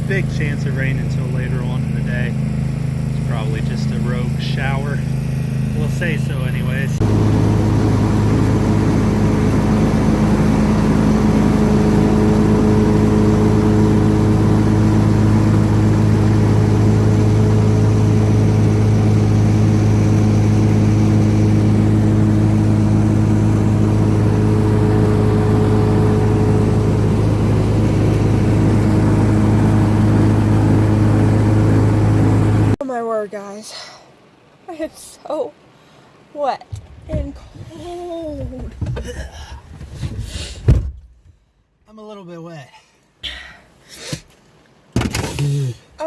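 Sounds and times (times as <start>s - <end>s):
lawn mower engine running: 0.0s - 32.8s.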